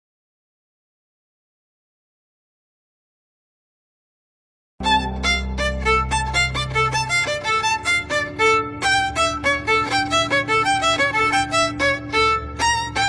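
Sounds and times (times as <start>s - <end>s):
fast lively violin tune: 4.8s - 13.0s.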